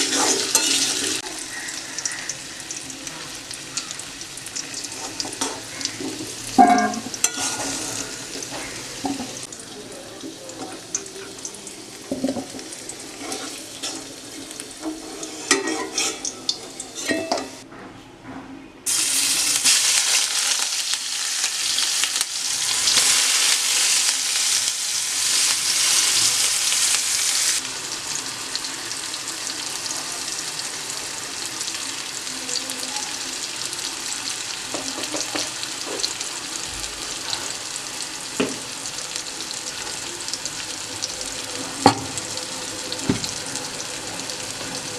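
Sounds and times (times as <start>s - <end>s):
food frying in hot oil: 0.0s - 17.6s, 18.9s - 44.9s
utensil scraping pan: 14.8s - 17.6s.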